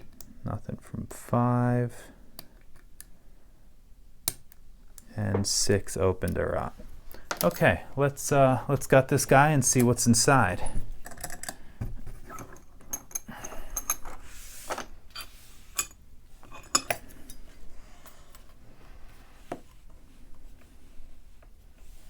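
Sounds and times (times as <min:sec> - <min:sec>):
metallic clicks of lock picking tools: 0:11.0 - 0:11.6.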